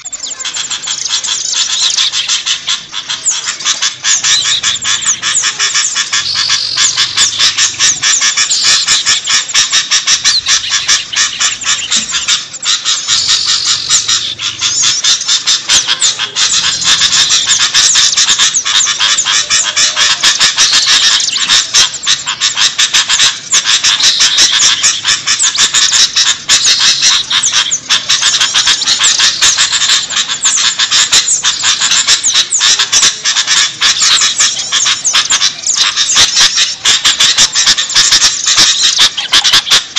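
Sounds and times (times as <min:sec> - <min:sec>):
chorus of songbirds chirping: 0:00.0 - 0:39.9.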